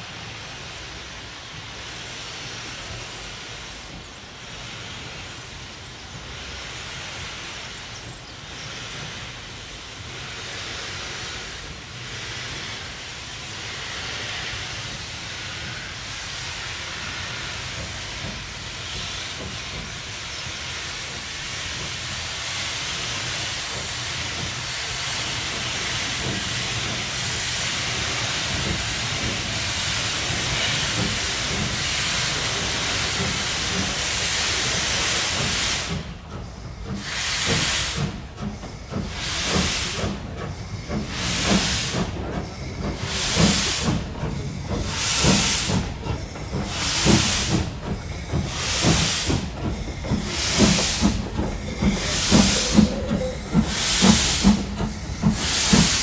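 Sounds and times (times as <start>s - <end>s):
steam hissing: 0.0s - 56.0s
steam locomotive exhaust beats: 0.0s - 56.0s.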